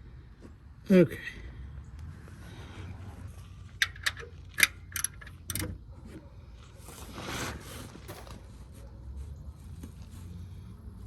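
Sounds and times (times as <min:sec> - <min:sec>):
tools clicking and knocking: 0:03.8 - 0:05.8
scraping rustle: 0:06.6 - 0:10.6.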